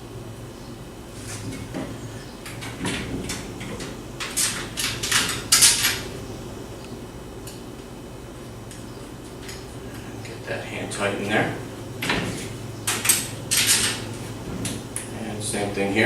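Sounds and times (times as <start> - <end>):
metal bolts clinking and scraping: 1.3 - 6.1, 12.0 - 14.8.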